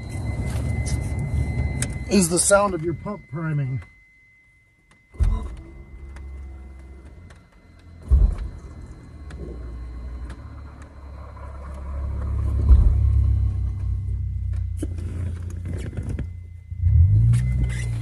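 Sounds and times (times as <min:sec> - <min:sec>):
electric fuel pump humming: 0:00.0 - 0:18.0.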